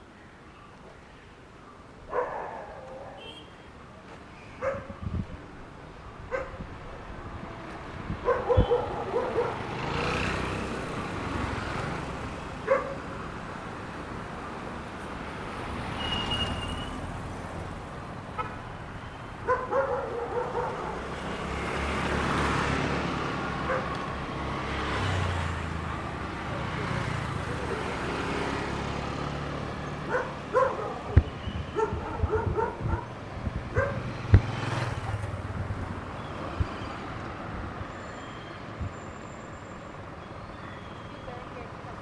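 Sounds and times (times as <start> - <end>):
road traffic: 0.0 - 42.0
dog barking: 2.1 - 3.2, 4.6 - 5.0, 6.3 - 6.6, 8.2 - 9.7, 12.6 - 13.1, 19.4 - 21.1, 23.7 - 23.9, 30.0 - 34.1.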